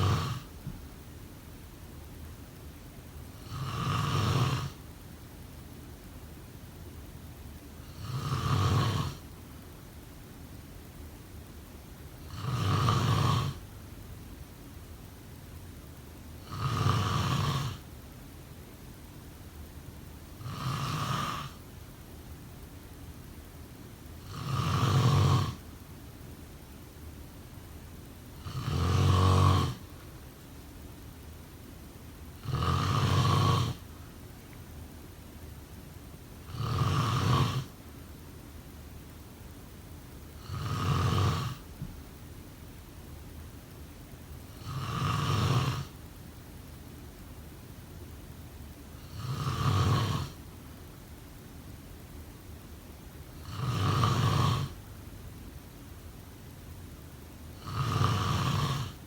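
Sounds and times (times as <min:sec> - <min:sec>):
person snoring: 0:00.0 - 0:00.6, 0:03.4 - 0:04.8, 0:07.8 - 0:09.2, 0:12.3 - 0:13.6, 0:16.4 - 0:17.8, 0:20.4 - 0:21.6, 0:24.2 - 0:25.6, 0:28.4 - 0:30.0, 0:32.4 - 0:33.8, 0:36.4 - 0:37.8, 0:40.4 - 0:41.6, 0:44.5 - 0:46.0, 0:49.0 - 0:50.4, 0:53.4 - 0:54.8, 0:57.6 - 0:59.0.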